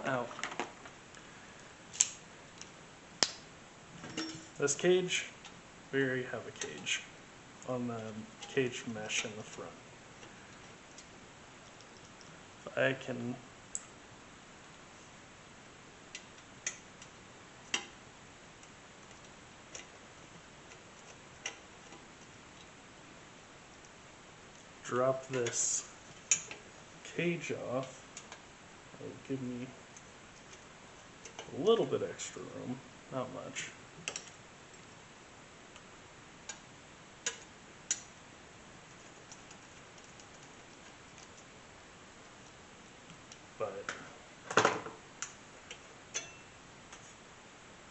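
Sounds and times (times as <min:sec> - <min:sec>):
metal clicks and taps: 0:37.2 - 0:38.1.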